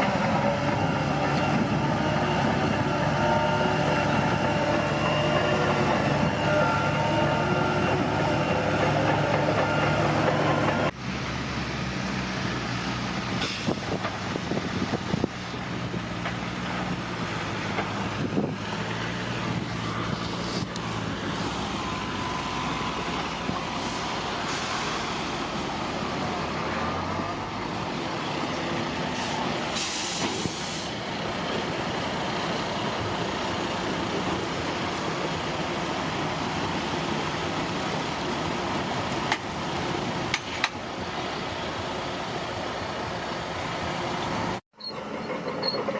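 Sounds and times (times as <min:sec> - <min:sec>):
bulldozer diesel engine running: 0:00.0 - 0:45.9
short hisses and knocks: 0:13.4 - 0:14.2, 0:29.2 - 0:31.0.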